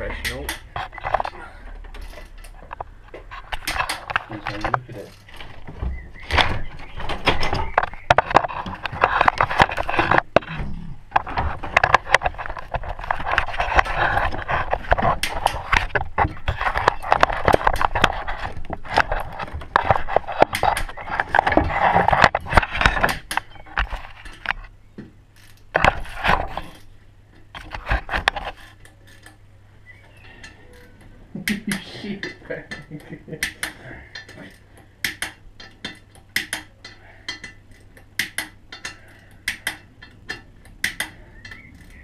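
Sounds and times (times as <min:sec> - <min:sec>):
hand tools clicking and knocking: 0:00.1 - 0:10.5, 0:30.3 - 0:42.0
metal parts scraping: 0:06.3 - 0:24.7.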